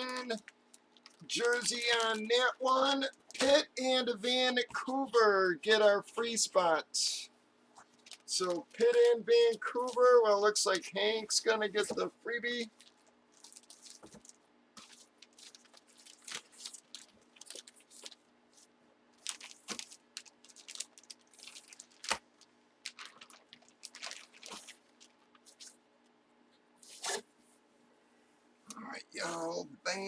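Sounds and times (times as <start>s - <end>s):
plastic packaging crinkling: 0.0s - 4.4s, 7.8s - 10.4s, 11.8s - 25.8s.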